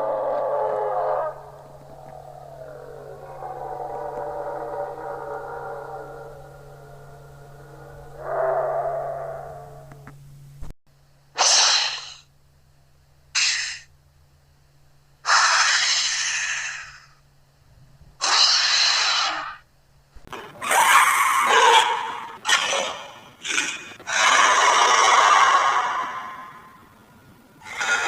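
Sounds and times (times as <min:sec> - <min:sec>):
breathy hissy cartoon sound effects: 0:00.0 - 0:09.9, 0:11.4 - 0:12.3, 0:13.3 - 0:13.9, 0:15.2 - 0:17.2, 0:18.2 - 0:19.6, 0:20.5 - 0:26.8, 0:27.6 - 0:28.0.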